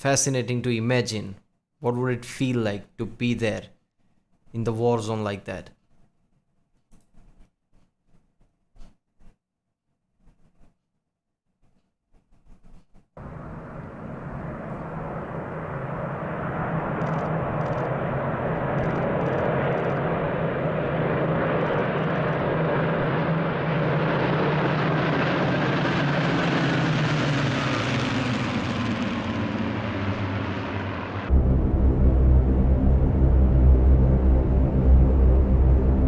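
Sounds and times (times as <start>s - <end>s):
propeller warplanes droning: 13.2s - 36.0s.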